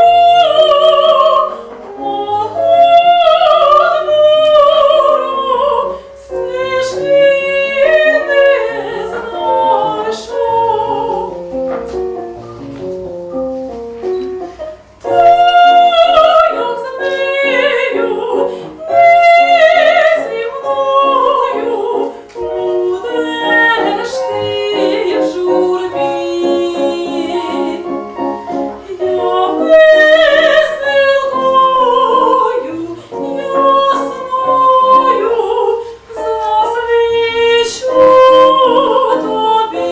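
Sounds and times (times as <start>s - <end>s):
operatic singing: 0.0s - 11.6s, 28.8s - 39.9s
piano accompaniment: 0.0s - 39.9s.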